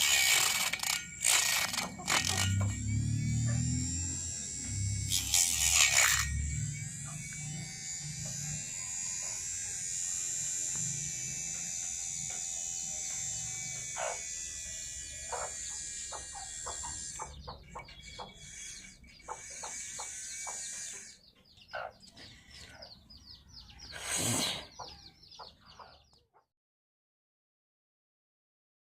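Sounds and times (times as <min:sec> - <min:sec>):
motor clicks: 0:00.0 - 0:21.6
small motor high-pitched whine: 0:00.0 - 0:26.0.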